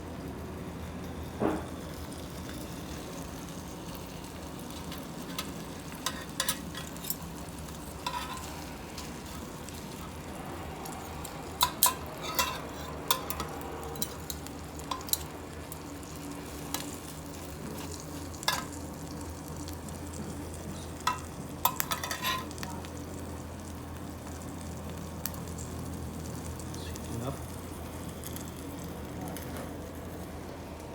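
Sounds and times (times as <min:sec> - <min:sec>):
food sizzling in a pan: 0:00.0 - 0:30.9
utensil clinking against pan: 0:08.0 - 0:08.5, 0:11.6 - 0:15.3.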